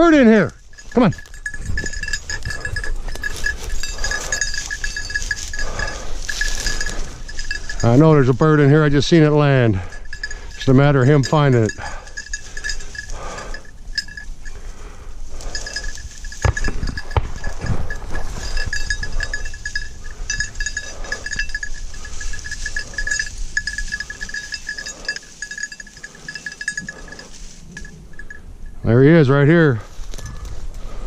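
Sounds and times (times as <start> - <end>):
collar bell jingling: 0.0 - 30.7
rustling through brush: 0.5 - 28.5, 29.8 - 31.0
low thumps: 16.3 - 20.6.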